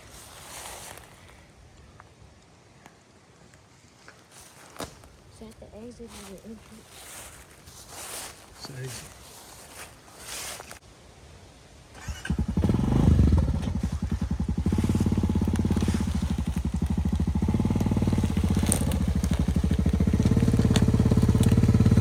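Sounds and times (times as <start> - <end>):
vehicle engine starting and revving: 11.9 - 22.0.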